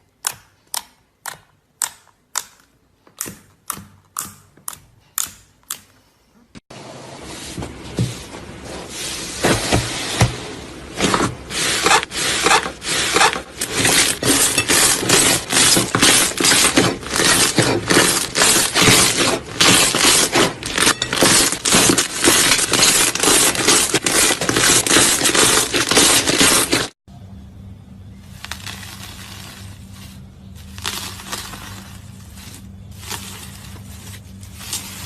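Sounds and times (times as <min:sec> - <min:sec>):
slime crackling and popping: 0:28.3 - 0:30.0, 0:30.6 - 0:32.3.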